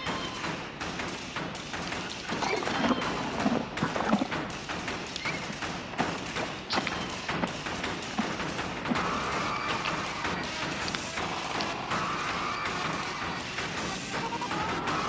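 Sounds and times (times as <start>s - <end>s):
thuds and taps: 0.0s - 15.0s
steady noise: 3.1s - 15.0s.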